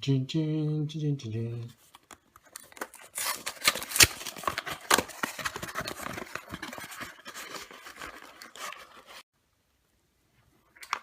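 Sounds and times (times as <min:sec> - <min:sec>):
cardboard rustling and tearing: 0:02.4 - 0:09.2.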